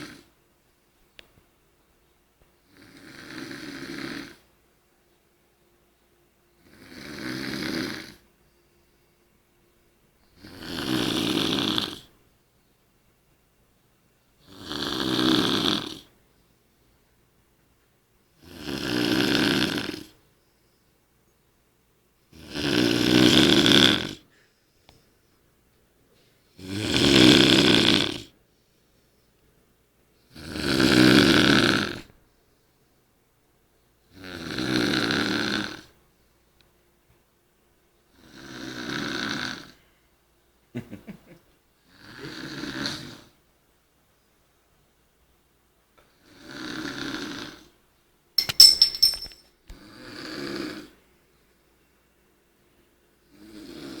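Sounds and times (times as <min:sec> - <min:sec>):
quiet breaths: 0:00.0 - 0:26.7, 0:28.0 - 0:30.5, 0:31.5 - 0:34.8, 0:35.4 - 0:40.5, 0:49.9 - 0:54.0
man snoring loudly: 0:02.8 - 0:04.4, 0:06.6 - 0:08.2, 0:10.4 - 0:12.1, 0:14.4 - 0:16.0, 0:18.4 - 0:20.1, 0:22.4 - 0:24.2, 0:26.6 - 0:28.3, 0:30.3 - 0:32.0, 0:34.2 - 0:35.9, 0:38.2 - 0:39.8, 0:42.0 - 0:43.3, 0:46.4 - 0:47.6, 0:53.4 - 0:54.0.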